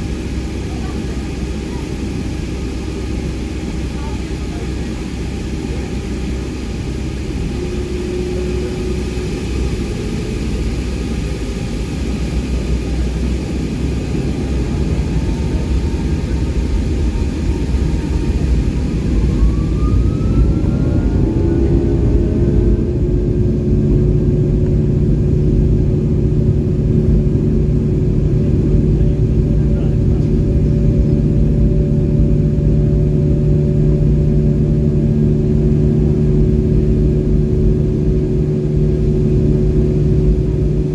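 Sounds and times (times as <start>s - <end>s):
jet engines rumbling in cabin: 0.0s - 40.9s
engine whine rising in pitch: 13.0s - 40.9s.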